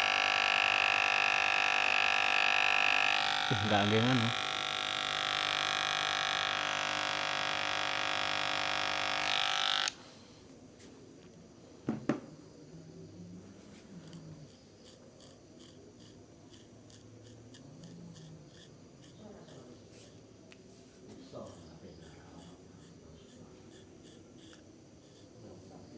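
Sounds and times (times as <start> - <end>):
electric hair clipper buzzing: 0.0 - 10.0.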